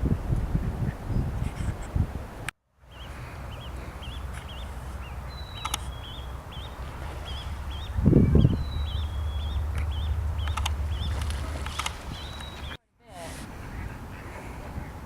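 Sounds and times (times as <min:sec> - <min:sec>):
bird chirping: 0:02.9 - 0:12.8
low steady rumble: 0:03.1 - 0:12.8
faint clicks: 0:05.5 - 0:06.0, 0:09.7 - 0:12.7.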